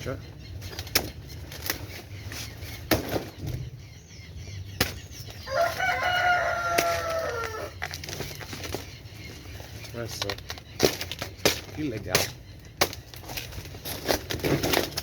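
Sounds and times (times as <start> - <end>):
chicken calling: 5.1 - 9.8.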